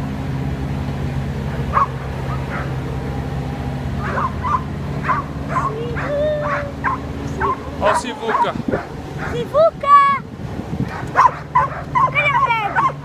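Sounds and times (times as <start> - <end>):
vehicle engine hum: 0.0 - 13.0
dog barking and yipping: 1.7 - 2.8, 4.0 - 9.5, 10.8 - 13.0.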